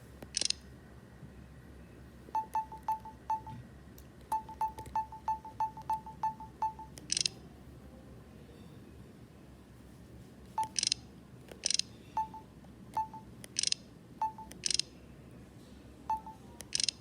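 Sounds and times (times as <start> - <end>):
phone key beeps: 2.4 - 3.6, 4.3 - 7.3, 10.6 - 11.0, 11.6 - 14.8, 16.1 - 17.0.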